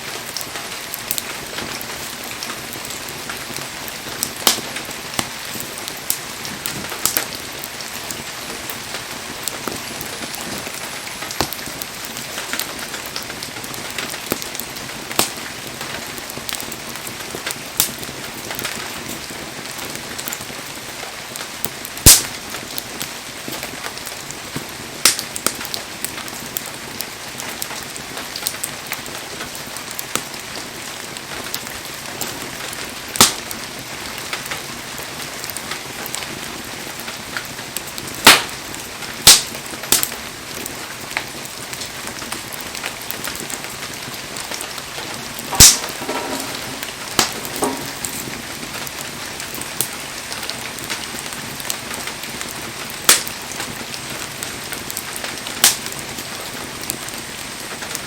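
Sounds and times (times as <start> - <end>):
fire crackling: 0.0 - 58.0
loud wood pops: 38.2 - 38.6, 45.4 - 48.4, 55.6 - 56.0.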